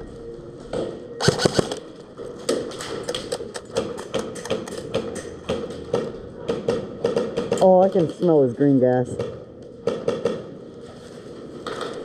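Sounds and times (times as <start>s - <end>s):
airsoft guns firing: 1.2s - 1.8s.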